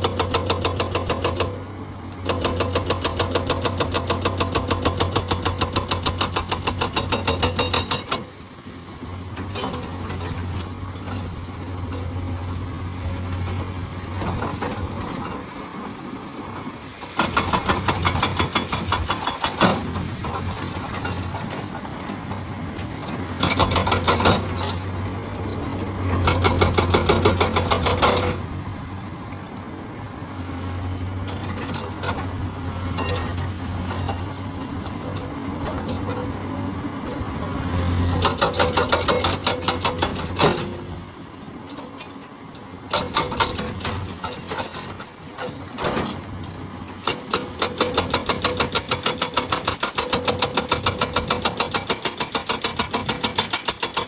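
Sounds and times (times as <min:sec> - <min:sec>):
hydraulic breaker hammering rock: 0:00.0 - 0:08.4, 0:17.1 - 0:21.9, 0:23.4 - 0:24.9, 0:26.1 - 0:28.5, 0:38.1 - 0:41.0, 0:42.9 - 0:46.2, 0:47.0 - 0:54.0
excavator engine running: 0:00.0 - 0:54.0.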